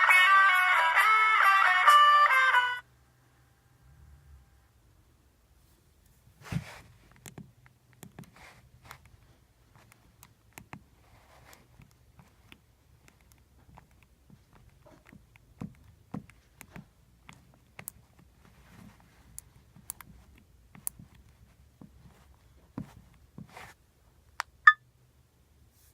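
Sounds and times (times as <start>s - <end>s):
phone key clicks and taps: 11.6s - 18.4s.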